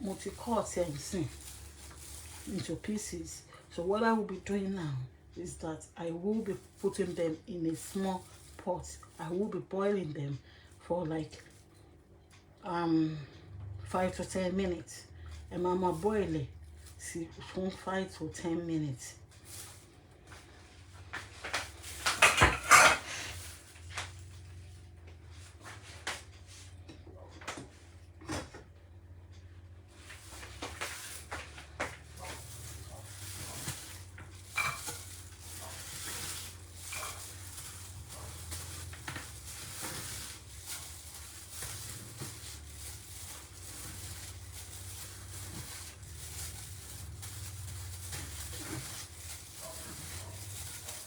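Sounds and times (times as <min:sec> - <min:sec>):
utensils clattering in cooking pot: 0:21.5 - 0:23.6, 0:30.6 - 0:47.2.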